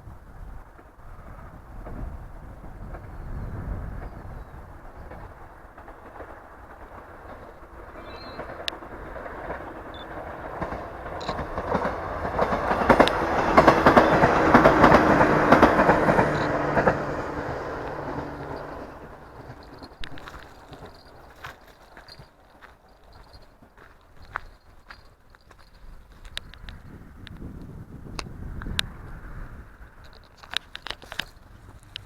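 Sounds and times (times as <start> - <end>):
train passing: 0.1 - 24.1
wheels clattering over rail joints: 1.6 - 26.9.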